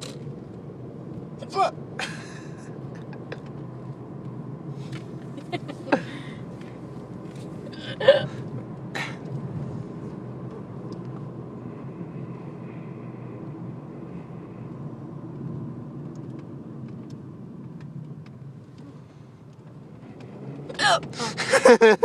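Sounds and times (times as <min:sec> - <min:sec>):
low rumble: 0:00.0 - 0:21.2
woman burping: 0:20.8 - 0:21.4.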